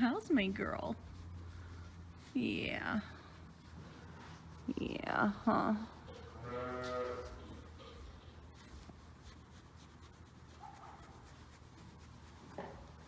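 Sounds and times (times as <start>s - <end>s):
sheep rustling in bedding: 0.0s - 13.0s
sheep bleating: 6.4s - 7.6s.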